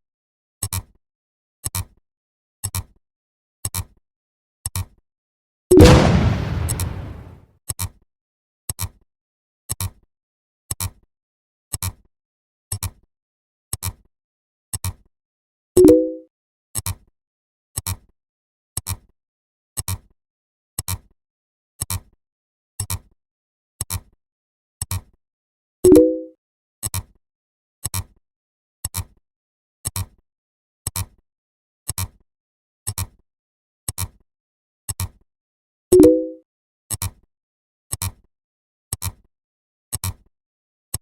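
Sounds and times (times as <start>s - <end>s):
low-pitched blip: 5.8s - 7.4s.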